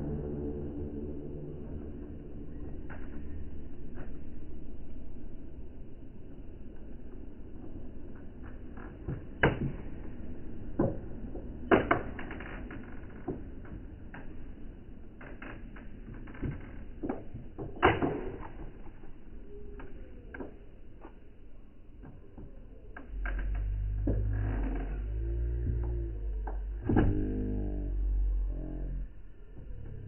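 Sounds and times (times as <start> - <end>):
low room rumble: 0.0 - 11.8, 18.9 - 30.0
knocks and thumps: 22.1 - 29.0.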